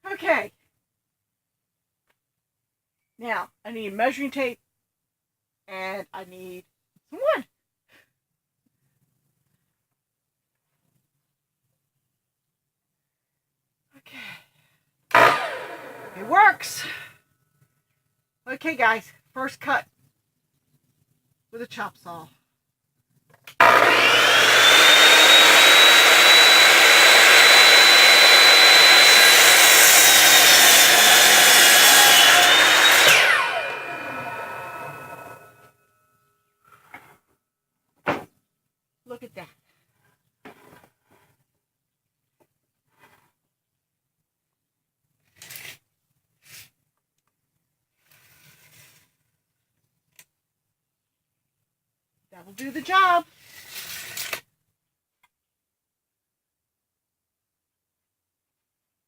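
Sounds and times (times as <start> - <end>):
chop saw motor whine: 15.1 - 16.4, 23.6 - 35.6
saw cutting into board: 15.1 - 16.7, 23.6 - 35.6, 53.0 - 54.4
handling scrapes and rustles: 39.8 - 41.5, 42.8 - 43.4, 45.2 - 46.8, 47.8 - 49.6, 52.6 - 54.4.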